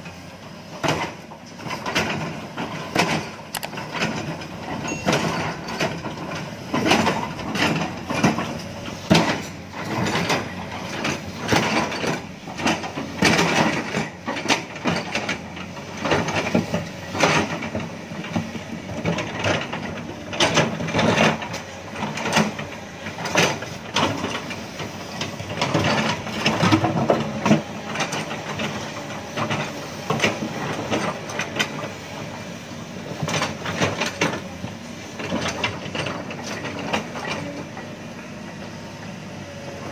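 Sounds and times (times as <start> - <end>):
excavator diesel engine under load: 0.0 - 39.9
metal clanks and knocks: 0.8 - 15.4.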